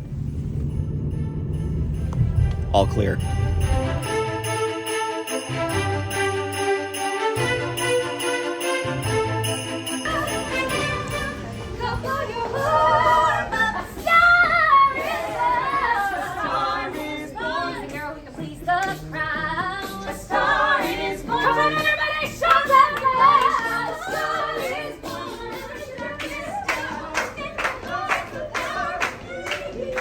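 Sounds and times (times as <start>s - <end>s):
female choir singing: 9.5s - 30.0s.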